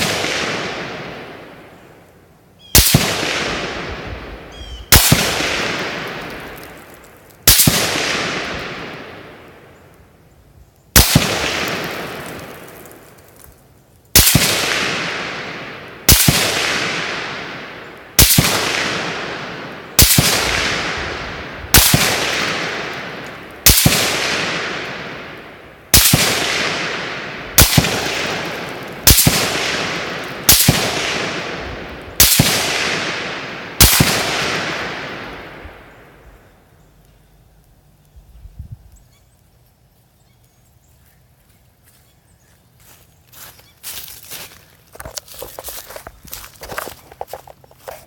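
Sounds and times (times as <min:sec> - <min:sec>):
rifle shots with echo: 0:00.0 - 0:02.0, 0:02.7 - 0:09.8, 0:11.0 - 0:13.4, 0:14.1 - 0:36.6.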